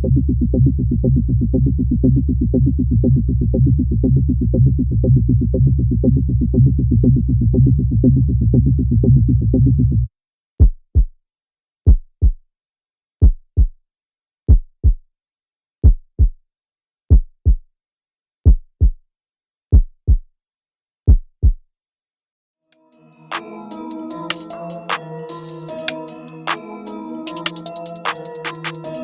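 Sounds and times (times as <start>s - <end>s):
heartbeat thumps: 0.0s - 11.1s, 11.9s - 12.4s, 13.2s - 13.8s, 14.5s - 15.0s, 15.8s - 16.4s, 17.1s - 17.6s, 18.4s - 19.0s, 19.7s - 20.3s, 21.1s - 21.6s
electronic music: 22.8s - 29.0s.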